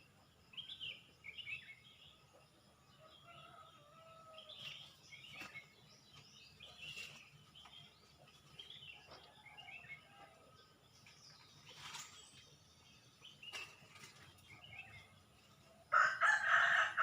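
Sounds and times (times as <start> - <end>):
birds chirping and whistling: 3.3 - 10.2, 11.0 - 15.4.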